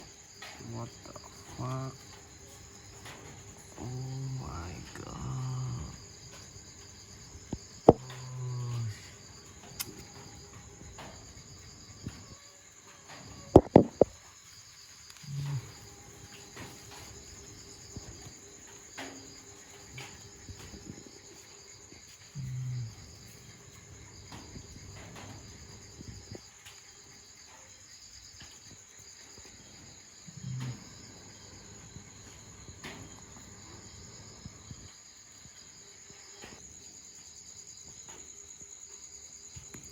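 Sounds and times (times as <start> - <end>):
crickets trilling: 0.0 - 39.9
dog growling: 3.8 - 6.0, 22.4 - 23.1, 30.2 - 31.0.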